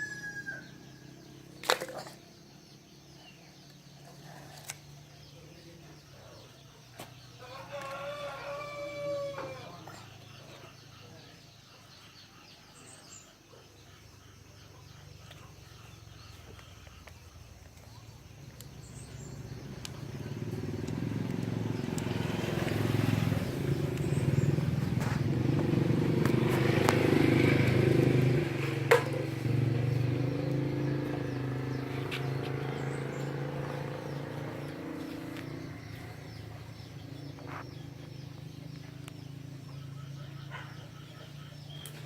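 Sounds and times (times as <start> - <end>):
motor engine humming: 15.3 - 42.0.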